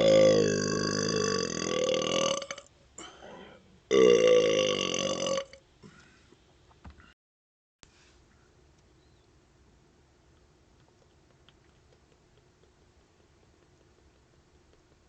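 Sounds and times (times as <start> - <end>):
person burping: 0.0 - 5.6.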